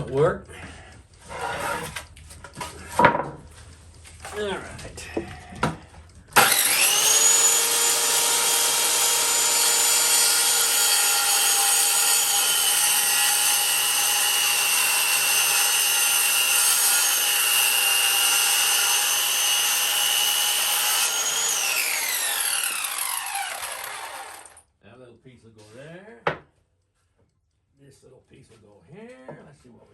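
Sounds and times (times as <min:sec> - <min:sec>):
table saw cutting wood: 0:01.3 - 0:02.0, 0:06.4 - 0:24.6
saw blade spinning down: 0:06.4 - 0:24.6.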